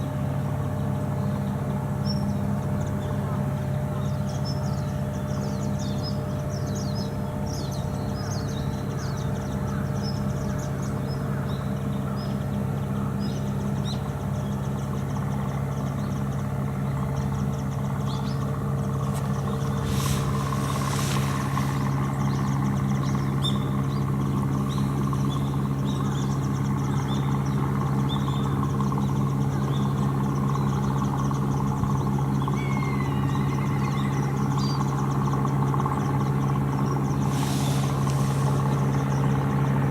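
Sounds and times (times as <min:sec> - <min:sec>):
engine idling: 0:00.0 - 0:39.9
small birds chirping: 0:00.7 - 0:39.9
brief hiss: 0:19.6 - 0:22.1, 0:37.2 - 0:38.8.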